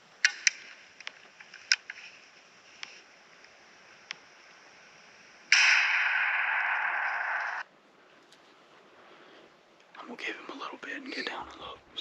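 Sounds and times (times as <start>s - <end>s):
loud hiss: 0.0s - 7.7s.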